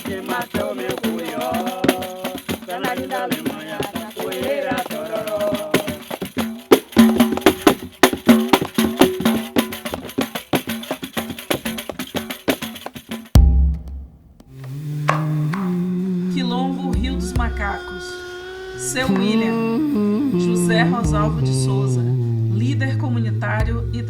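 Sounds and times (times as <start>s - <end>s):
people singing: 0.0s - 6.5s, 14.8s - 24.0s
rattling percussion beat: 0.0s - 18.2s, 20.8s - 21.6s, 23.2s - 24.0s
heavy low thud: 13.4s - 15.8s.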